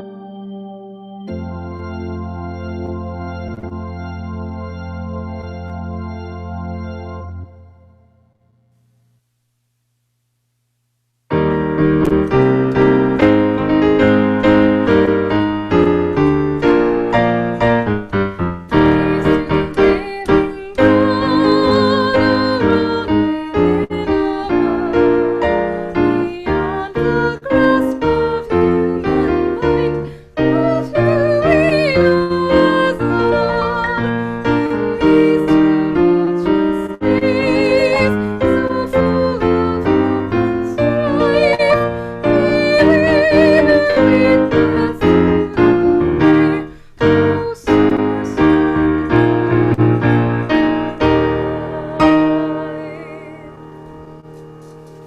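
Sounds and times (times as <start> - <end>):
melody with vibrato: 0.0 - 8.2
piano music: 0.0 - 8.4, 11.3 - 55.0.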